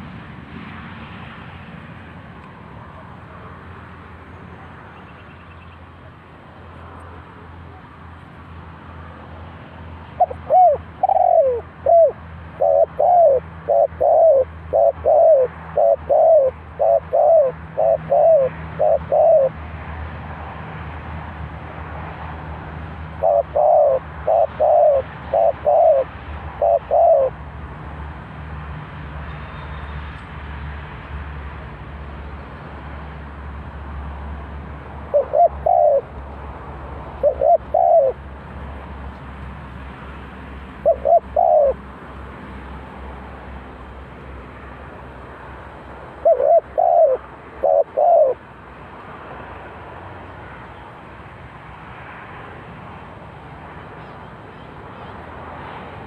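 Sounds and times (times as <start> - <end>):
dove cooing: 10.2 - 19.6, 23.1 - 27.4, 35.0 - 36.2, 37.1 - 38.3, 40.8 - 41.8, 46.2 - 48.4.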